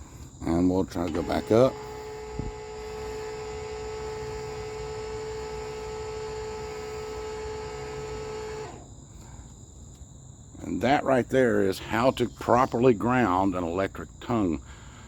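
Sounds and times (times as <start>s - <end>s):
electric jack motor whining: 0.9s - 8.9s.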